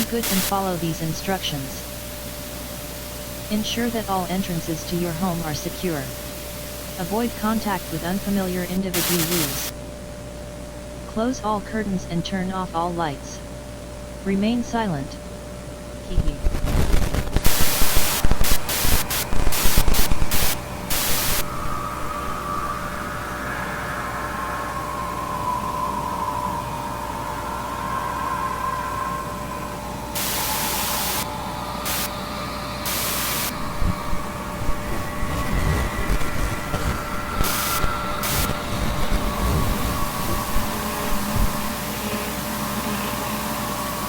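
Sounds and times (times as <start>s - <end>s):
tv static bursts: 0.0s - 9.8s, 16.1s - 22.4s, 30.1s - 44.0s
low hiss: 0.0s - 44.0s
steady hum: 0.0s - 44.0s
faint wavering tone: 19.2s - 44.0s.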